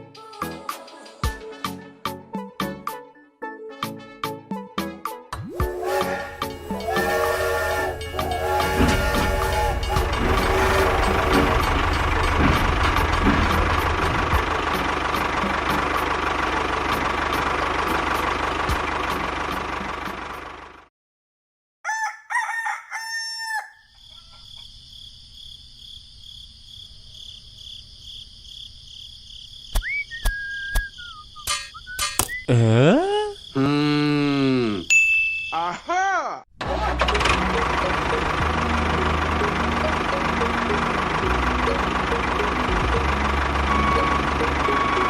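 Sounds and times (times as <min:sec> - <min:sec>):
gliding whistle-like tones: 0:05.5 - 0:12.0, 0:29.8 - 0:32.5, 0:43.6 - 0:45.0
rooster crowing: 0:05.6 - 0:12.5, 0:21.8 - 0:24.6
loud mechanical noise with hum: 0:05.9 - 0:20.5
faint steady high tones: 0:43.3 - 0:45.0.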